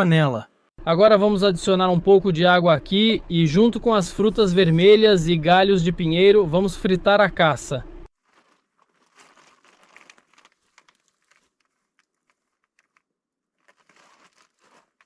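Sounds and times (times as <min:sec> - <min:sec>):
faint crackling and rustling: 0:08.1 - 0:15.0.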